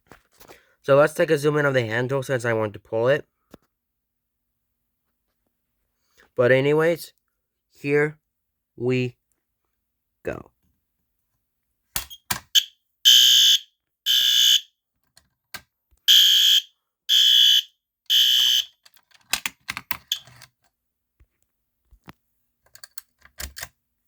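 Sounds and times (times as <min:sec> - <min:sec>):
fire alarm horn blasts: 0:12.6 - 0:14.7, 0:16.1 - 0:18.8.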